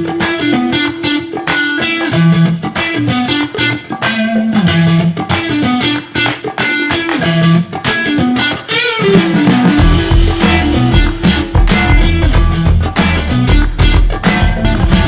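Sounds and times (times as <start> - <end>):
plucked guitar music: 0.0 - 15.0
bass line: 9.2 - 15.0.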